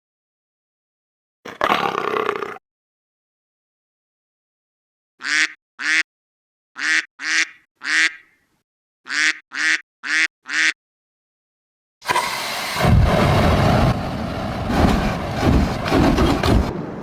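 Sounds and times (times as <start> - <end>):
duck quacking: 5.2 - 6.1, 6.8 - 8.4, 9.1 - 10.8.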